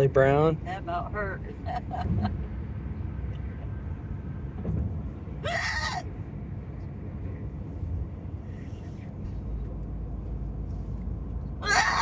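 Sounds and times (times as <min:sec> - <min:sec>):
car driving rumble: 0:00.0 - 0:12.0
woman's voiced yelp: 0:11.6 - 0:12.0.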